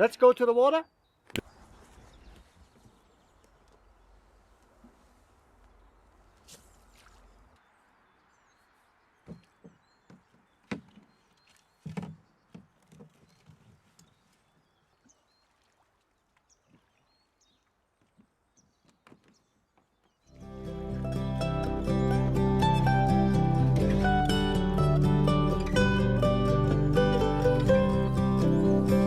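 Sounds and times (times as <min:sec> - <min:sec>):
small birds chirping: 0:00.0 - 0:20.4
canoe paddle knocks and splashes: 0:09.3 - 0:14.4, 0:15.0 - 0:17.1.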